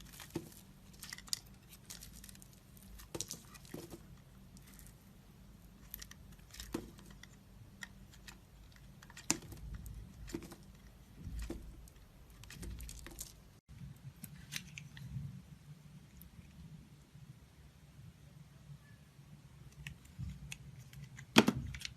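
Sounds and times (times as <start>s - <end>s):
hard soap clicking and crackling: 0.0s - 15.2s.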